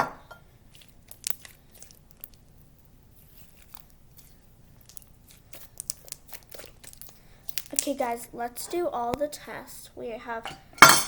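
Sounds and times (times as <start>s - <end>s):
slime crackling and clicking: 0.7s - 8.2s.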